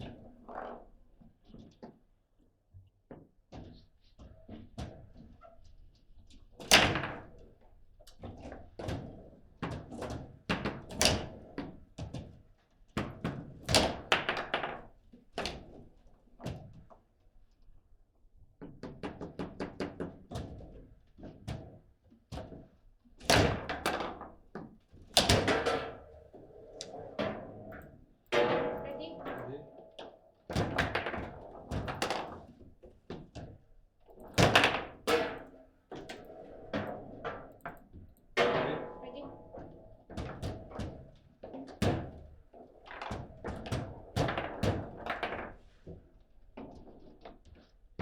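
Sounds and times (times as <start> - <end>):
table football knocks and thuds: 34.3 - 35.4, 43.1 - 45.5.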